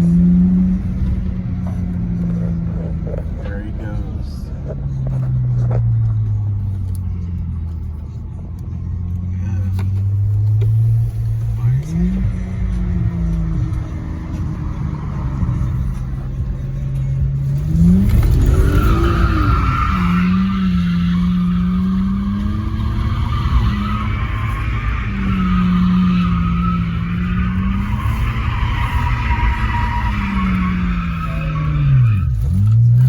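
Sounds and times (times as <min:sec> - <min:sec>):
car engine revving high: 0:10.0 - 0:33.0
tyres squealing: 0:17.6 - 0:33.0.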